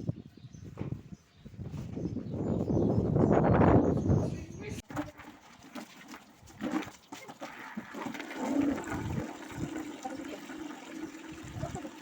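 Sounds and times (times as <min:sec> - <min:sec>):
water running and splashing: 0:04.8 - 0:12.0.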